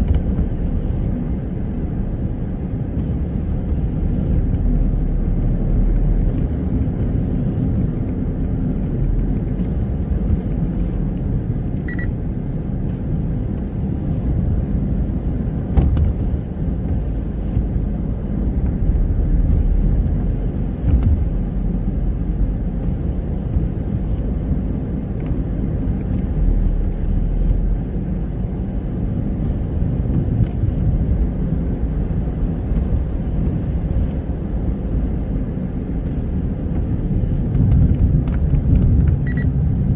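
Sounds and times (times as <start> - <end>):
car engine and tyre rumble: 0.0 - 39.9
car bump: 15.7 - 17.7.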